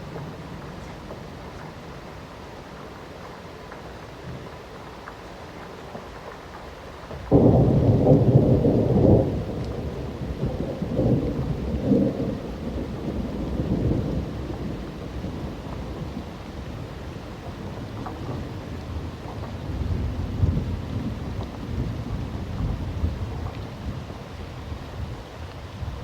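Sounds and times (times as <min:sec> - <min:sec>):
steady rain: 0:00.0 - 0:26.0
thunderclap: 0:07.2 - 0:23.9.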